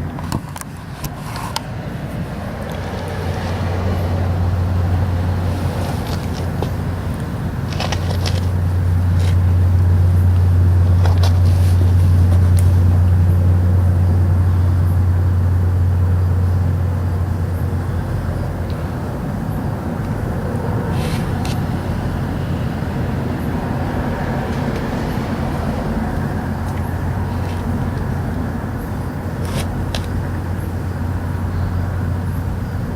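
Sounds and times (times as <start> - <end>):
faint rumble: 0.0 - 32.9
deep hum: 1.8 - 32.9.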